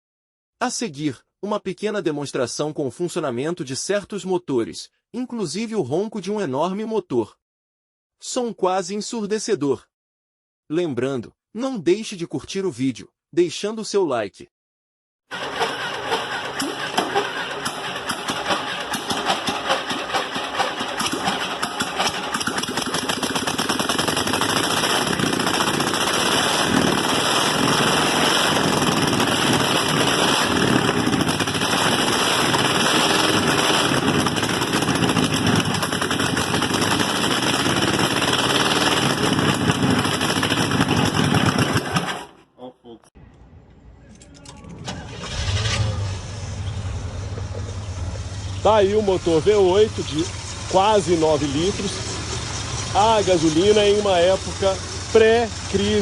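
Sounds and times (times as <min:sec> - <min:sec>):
large old engine running: 0:15.3 - 0:42.3, 0:46.6 - 0:56.0.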